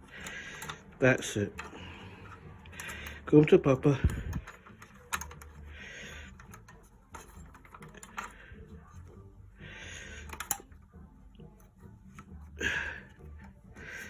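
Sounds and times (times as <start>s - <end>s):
clicks and knocks of fitting: 0.0s - 3.3s, 4.0s - 5.6s, 6.2s - 8.5s, 10.2s - 10.7s.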